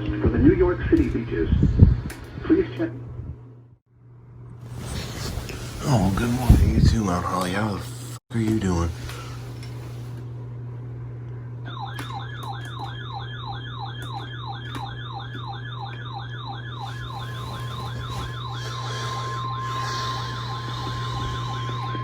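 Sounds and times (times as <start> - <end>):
low electrical hum: 0.0 - 22.0
falling electronic siren sweep: 11.6 - 22.0.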